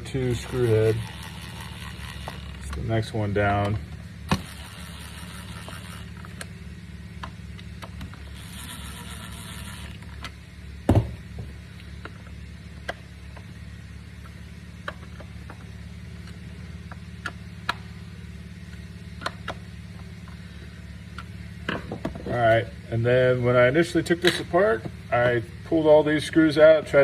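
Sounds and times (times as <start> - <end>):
low background hum: 0.0 - 27.0
rasping scrape: 0.1 - 2.7.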